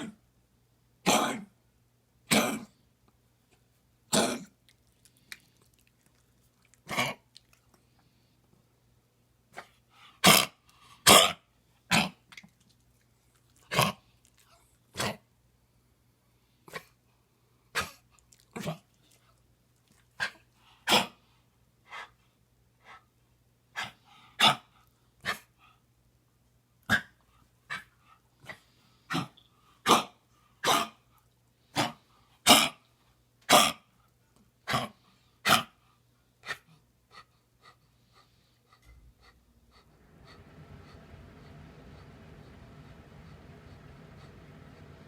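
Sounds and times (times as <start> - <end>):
dog coughing: 1.0 - 1.5, 2.3 - 2.8, 4.1 - 4.6, 10.2 - 12.2, 29.9 - 31.0, 32.5 - 32.8.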